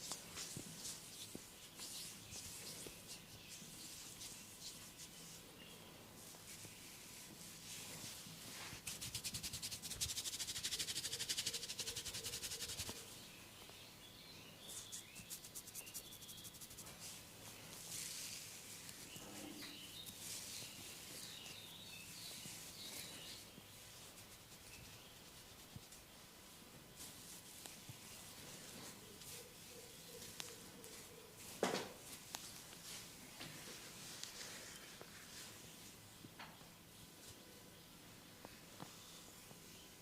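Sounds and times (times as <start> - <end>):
fingers rubbing skin and hair: 0.0 - 5.4, 6.2 - 13.0, 14.7 - 17.2
fast scratching strokes: 7.8 - 13.0, 14.7 - 17.2.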